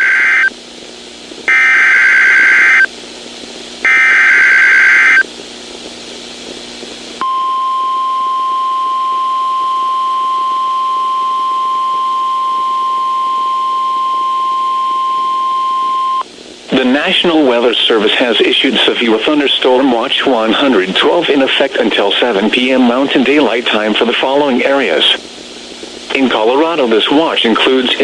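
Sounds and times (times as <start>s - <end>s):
steady warning alarm tone: 1.5s - 2.9s, 3.9s - 5.2s.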